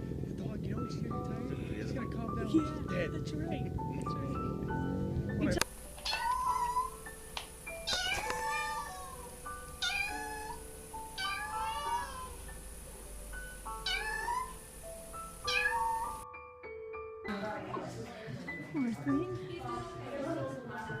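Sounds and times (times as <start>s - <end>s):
light background music: 0.0s - 21.0s
kitten mewing: 5.5s - 7.1s, 7.8s - 12.5s, 13.6s - 14.7s, 15.4s - 16.2s.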